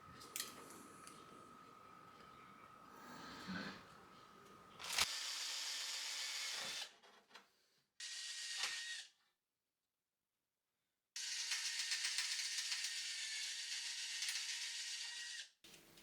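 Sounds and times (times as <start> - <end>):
small power tool running: 4.8 - 7.0, 8.0 - 9.2, 11.2 - 15.5.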